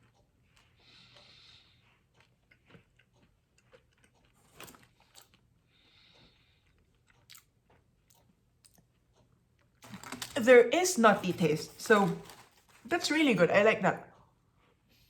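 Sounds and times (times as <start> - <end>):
chewing cookie: 0.0 - 13.2
soft breaths: 0.4 - 2.8, 4.9 - 7.0
small mouth clicks: 7.1 - 7.5.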